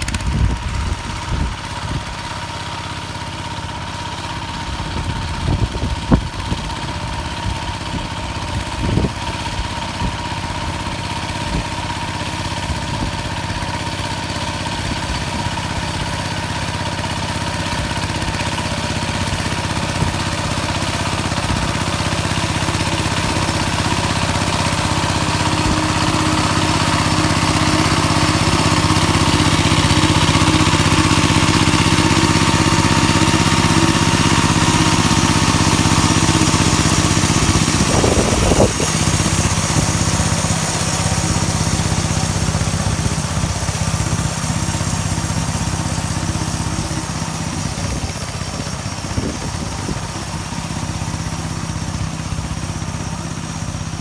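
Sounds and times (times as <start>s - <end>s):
short clatter: 0.0s - 1.5s
small tractor engine running: 0.0s - 54.0s.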